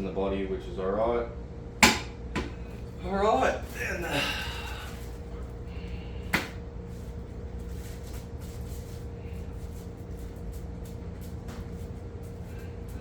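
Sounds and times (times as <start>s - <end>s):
faint steady hum: 0.0s - 13.0s
low background rumble: 0.0s - 13.0s.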